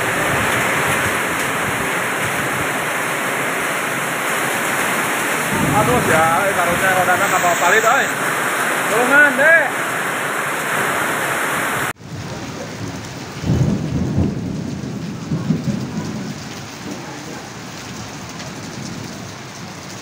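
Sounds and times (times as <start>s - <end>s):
heavy rain pouring: 0.0s - 20.0s
low rumbling: 5.2s - 8.6s.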